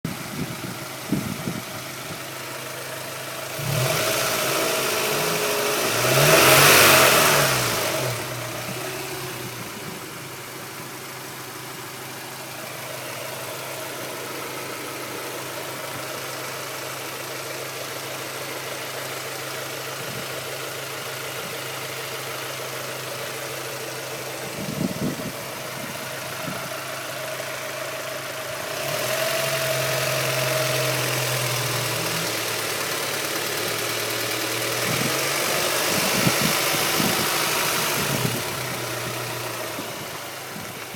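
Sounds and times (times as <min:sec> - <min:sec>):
car engine idling with rattle: 0:00.0 - 0:40.9
engine revving: 0:00.6 - 0:11.8, 0:24.0 - 0:40.9.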